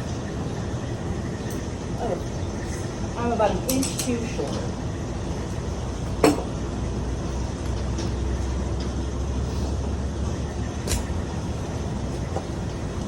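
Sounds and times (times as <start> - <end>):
truck engine idling: 4.7 - 13.0.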